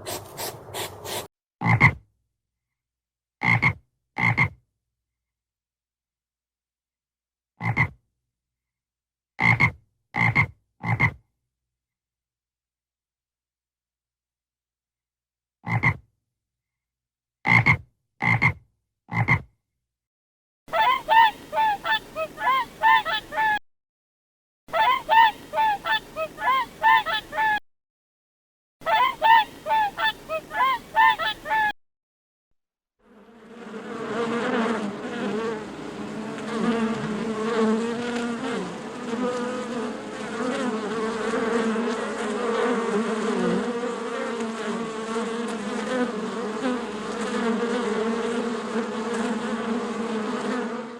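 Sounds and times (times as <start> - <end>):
insect buzz: 20.8 - 23.6, 24.8 - 27.6, 28.9 - 31.7, 33.0 - 50.9.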